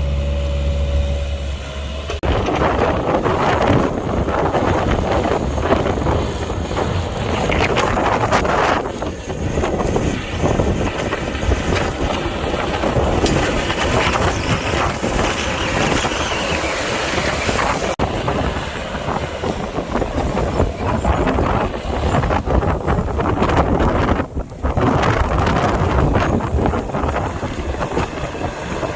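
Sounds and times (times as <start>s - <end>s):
excavator diesel engine running: 0.0s - 28.9s
wind buffeting microphone: 2.2s - 28.9s.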